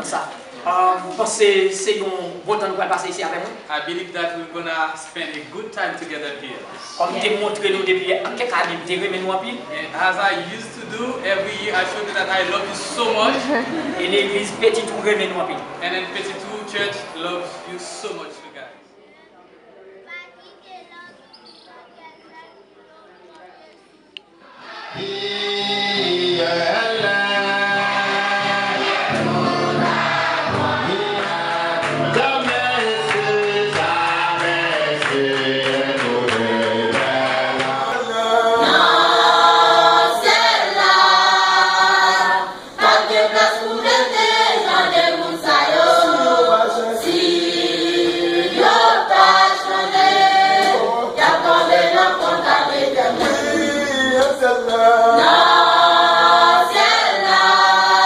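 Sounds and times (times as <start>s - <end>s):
choir singing: 24.4s - 58.0s.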